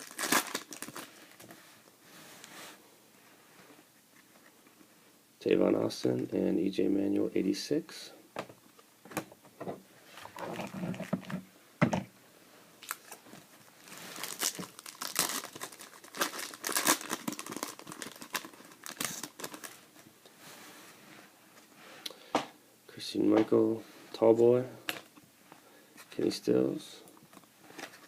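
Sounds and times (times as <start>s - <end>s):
foil wrapper crinkling and tearing: 0.0s - 1.4s, 14.1s - 20.0s.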